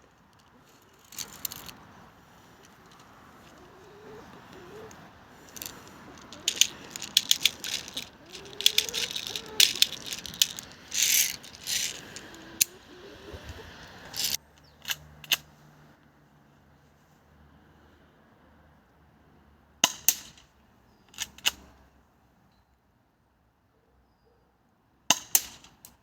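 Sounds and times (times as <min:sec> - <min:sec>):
pistol slide clicking and rattling: 0:00.3 - 0:01.8, 0:04.4 - 0:12.9, 0:14.0 - 0:15.5, 0:21.2 - 0:21.6, 0:25.1 - 0:26.0.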